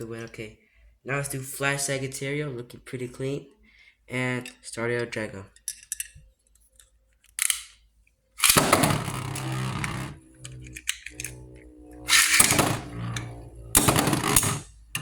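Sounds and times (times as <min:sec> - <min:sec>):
spinning tops whirring: 0:08.4 - 0:15.0
spinning tops clashing: 0:12.0 - 0:14.6.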